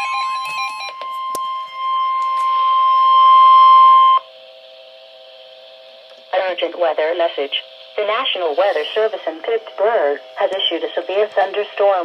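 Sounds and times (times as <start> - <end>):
steady alarm tone: 0.0 - 12.0
faint radio hiss: 4.4 - 12.0.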